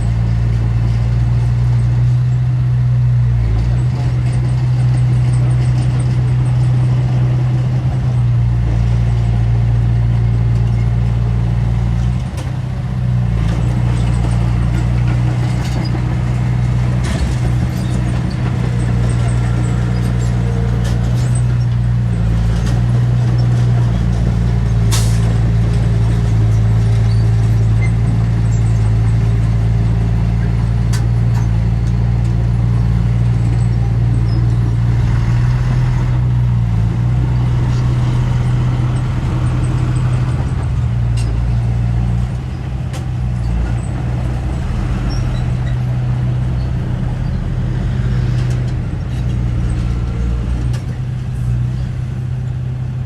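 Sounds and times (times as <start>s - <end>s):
heavy diesel engine running: 0.0s - 53.0s.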